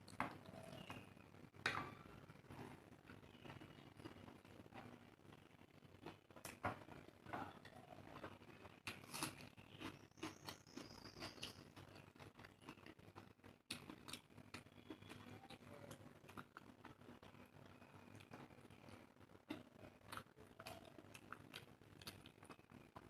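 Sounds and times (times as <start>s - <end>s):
soft chewing: 0.0s - 23.0s
small crunches: 8.2s - 17.3s.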